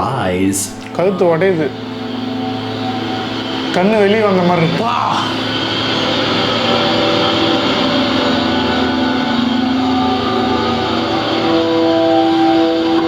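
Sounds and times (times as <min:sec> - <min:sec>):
even hiss: 0:00.0 - 0:13.0
low droning music: 0:00.0 - 0:13.0.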